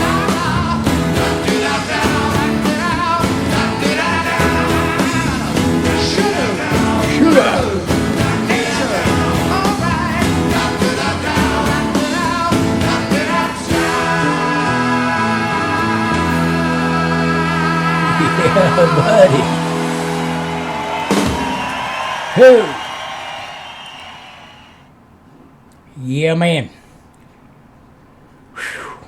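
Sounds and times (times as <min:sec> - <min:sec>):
live rock band with singing: 0:00.0 - 0:21.8.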